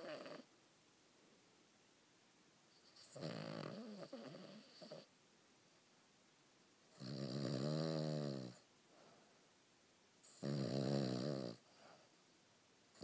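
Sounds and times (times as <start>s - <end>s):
dog snoring: 0.0s - 0.5s, 2.8s - 5.1s, 6.9s - 8.7s, 10.2s - 11.9s.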